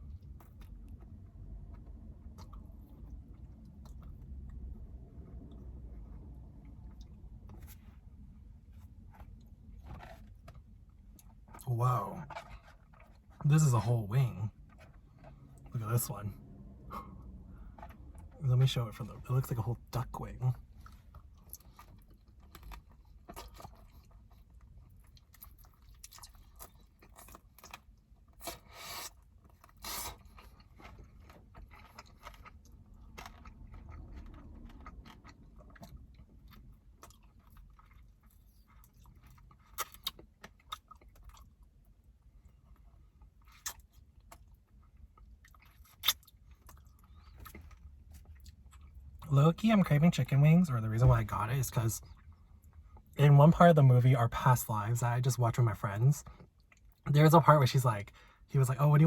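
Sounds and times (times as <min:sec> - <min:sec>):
crunchy chewing: 0:20.7 - 0:41.8.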